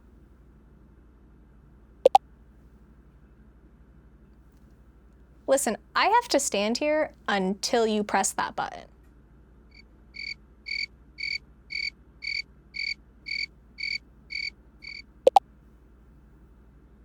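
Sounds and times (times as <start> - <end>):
cricket chirping: 10.2 - 15.0.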